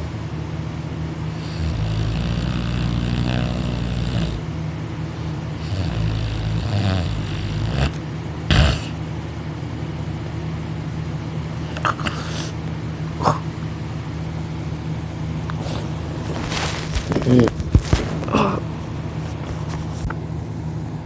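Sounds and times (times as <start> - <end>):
man snoring loudly: 1.3 - 4.4, 5.6 - 9.0.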